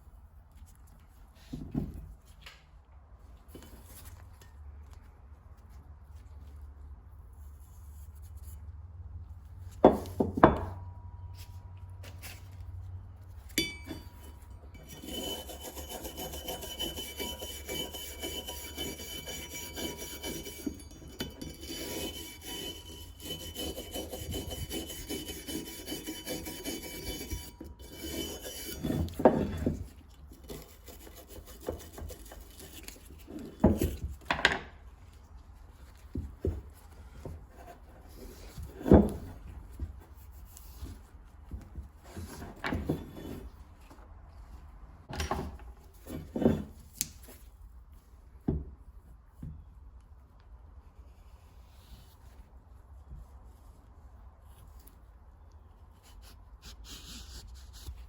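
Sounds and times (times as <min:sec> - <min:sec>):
abrasive rubbing on metal: 0:14.8 - 0:29.2.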